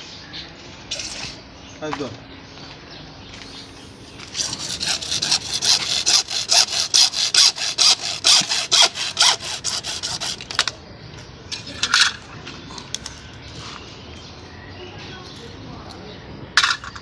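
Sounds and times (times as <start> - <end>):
hand saw cutting plastic pipe: 3.4 - 10.8.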